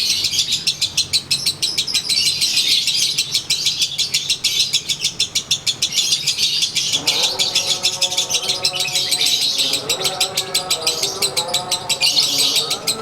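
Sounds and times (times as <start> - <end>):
lovebird harsh chattering song: 0.0 - 13.0.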